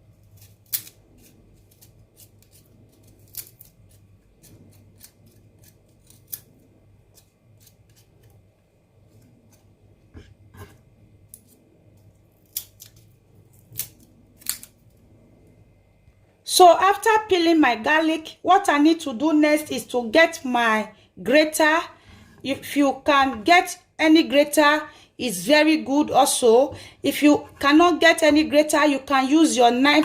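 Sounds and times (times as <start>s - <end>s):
garlic skin crackling: 0.0s - 8.4s, 10.6s - 15.0s.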